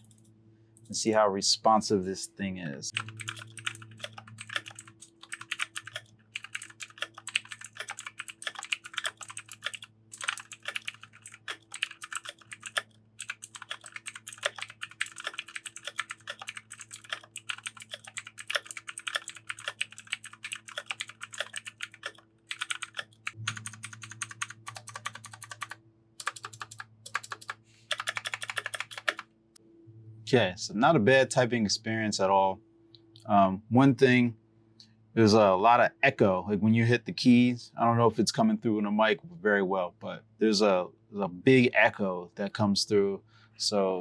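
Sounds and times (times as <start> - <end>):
fast clicky keyboard typing: 3.0 - 29.2.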